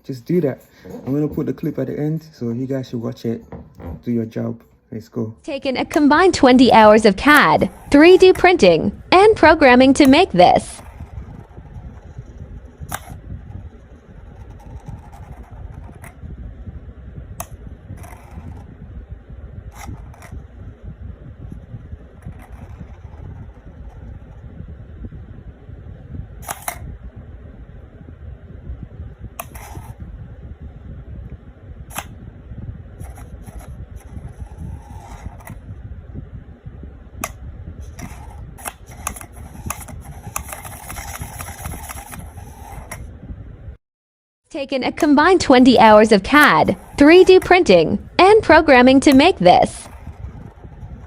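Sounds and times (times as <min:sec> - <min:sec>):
fan-like hum: 0:00.0 - 0:43.8, 0:44.5 - 0:51.0
steady low rumble: 0:05.4 - 0:43.8.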